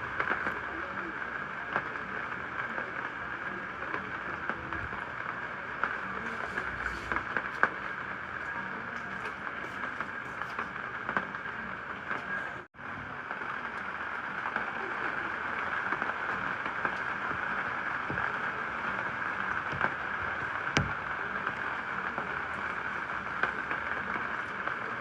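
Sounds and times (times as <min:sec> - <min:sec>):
steady rain falling: 0:00.0 - 0:25.0
raindrop ticks: 0:13.3 - 0:25.0.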